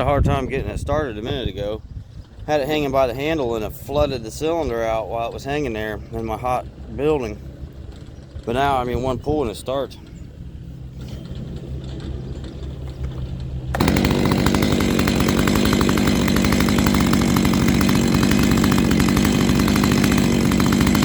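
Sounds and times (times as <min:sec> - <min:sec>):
chainsaw revving at full throttle: 0:11.0 - 0:21.0.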